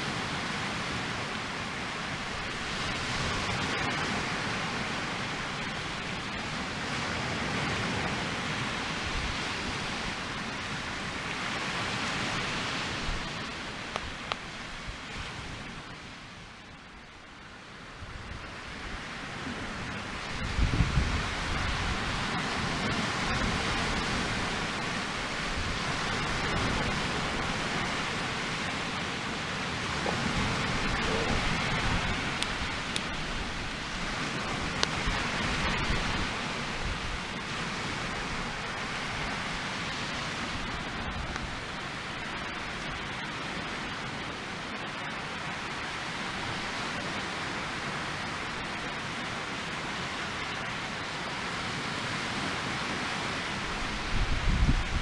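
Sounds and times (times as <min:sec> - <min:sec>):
fire crackling: 0:09.1 - 0:15.2, 0:20.0 - 0:42.9.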